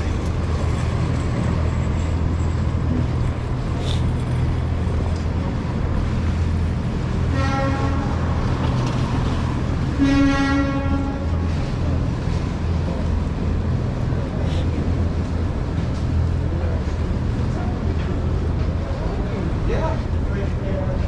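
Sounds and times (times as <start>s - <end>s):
street traffic engine rumble: 0.0s - 21.0s
vehicle horn honking: 7.3s - 8.1s, 10.0s - 11.2s.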